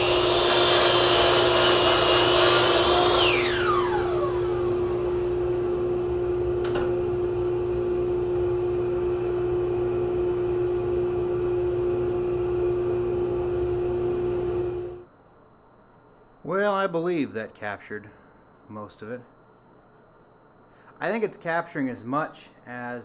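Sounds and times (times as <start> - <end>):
dust collector suction running: 0.0 - 15.1.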